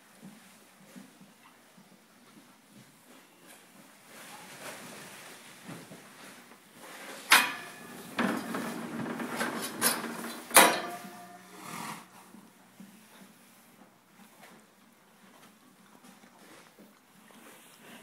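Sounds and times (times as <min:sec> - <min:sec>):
horse snoring: 0:11.0 - 0:12.4
sudden loud snort bursts: 0:11.5 - 0:12.3.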